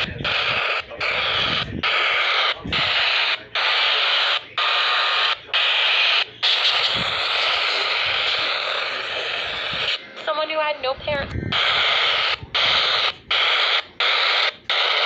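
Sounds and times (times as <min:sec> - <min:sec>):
radio static bursts: 0:00.0 - 0:15.0.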